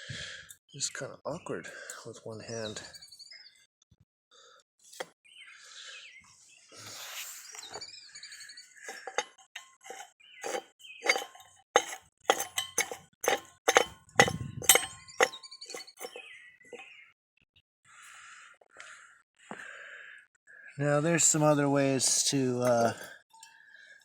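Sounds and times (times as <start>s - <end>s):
metal clinking and tapping: 8.9s - 16.2s, 22.6s - 23.5s
quiet fumbling: 8.9s - 16.2s, 22.0s - 23.1s.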